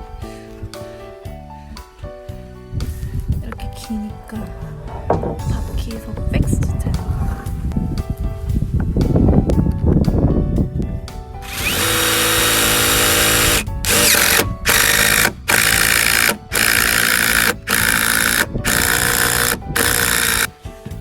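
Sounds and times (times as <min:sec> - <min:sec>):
power drill driving screws: 0:11.4 - 0:20.5.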